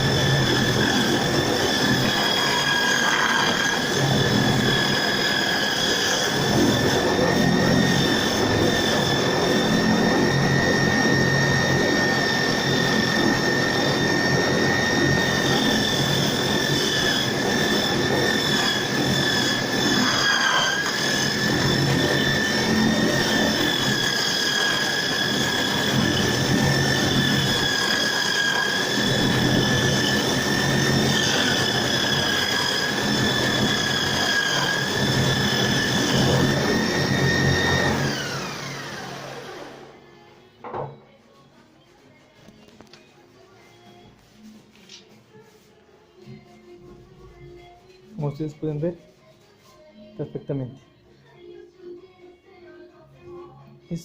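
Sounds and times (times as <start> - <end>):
electric drill motor whining: 0.0 - 40.0.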